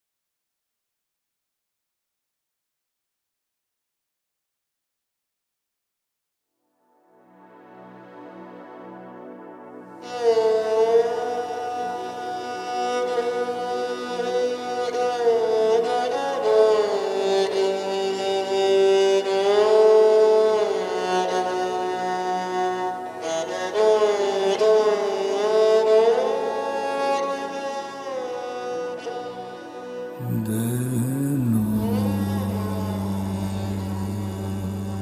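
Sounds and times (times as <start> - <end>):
sustained backing drone: 30.2 - 35.0.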